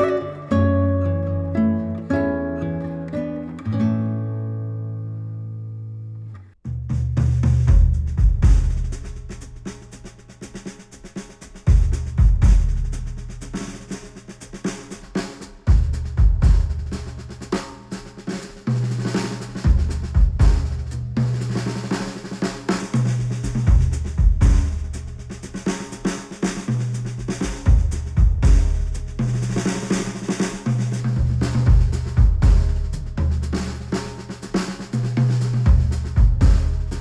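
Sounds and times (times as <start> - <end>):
deep bass notes: 6.7 - 9.6, 11.7 - 13.6, 15.7 - 17.3, 19.7 - 21.6, 23.0 - 25.6, 26.7 - 29.7, 30.7 - 34.0, 35.0 - 37.0
drum kit beat: 6.9 - 37.0.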